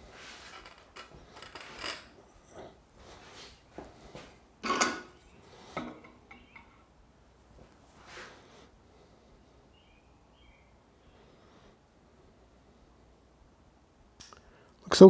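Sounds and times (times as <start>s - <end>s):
mower blade clanking against metal: 4.6s - 5.2s.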